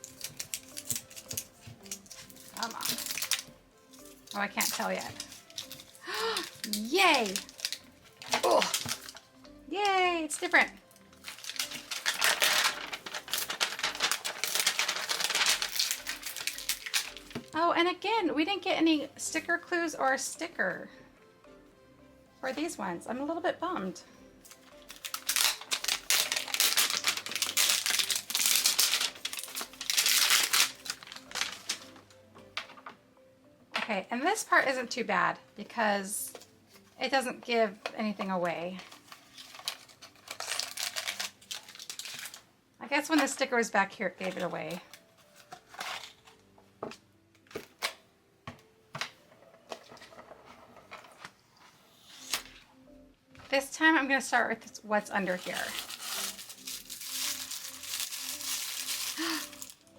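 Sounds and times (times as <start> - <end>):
plastic packaging crinkling: 0.0 - 9.3, 10.4 - 17.6, 24.5 - 32.0, 38.8 - 42.4, 55.2 - 59.9.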